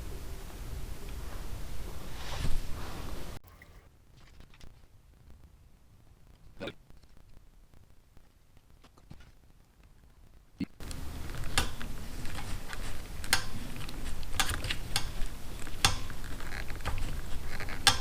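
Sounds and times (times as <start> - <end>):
small tools clicking and tapping: 10.9 - 18.0.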